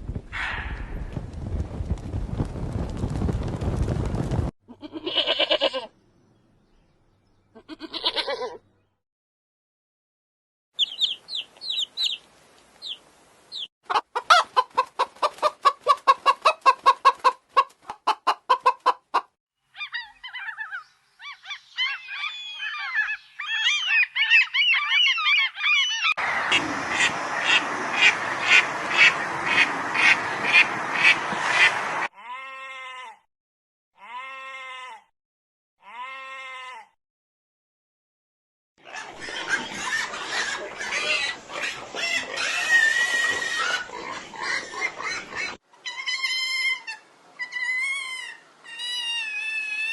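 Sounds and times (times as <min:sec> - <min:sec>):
bird chirps: 0:10.8 - 0:12.2, 0:12.8 - 0:13.7
drawn-out rising and falling bird calls: 0:10.8 - 0:17.8, 0:19.6 - 0:32.1
flock of birds calling: 0:19.8 - 0:32.1.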